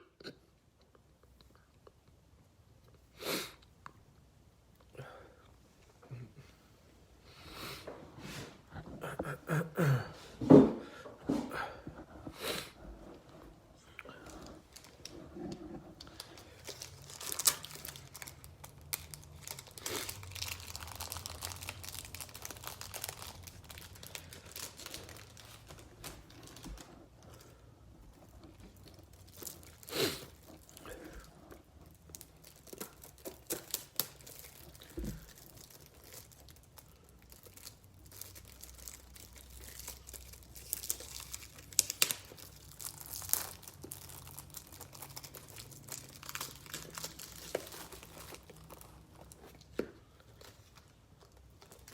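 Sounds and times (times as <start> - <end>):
plastic wrapping crinkling and tearing: 14.2 - 27.6, 28.2 - 51.9.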